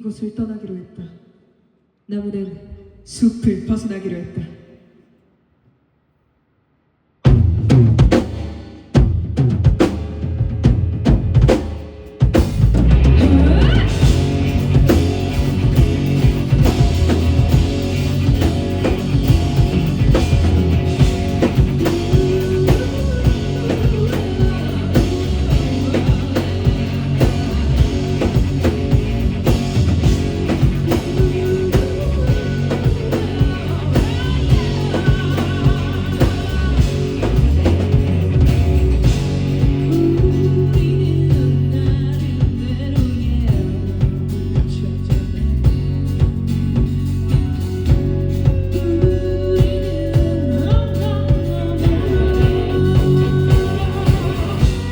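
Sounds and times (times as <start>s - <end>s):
drum kit steady beat: 7.3s - 54.9s
rock band playing: 7.3s - 54.9s.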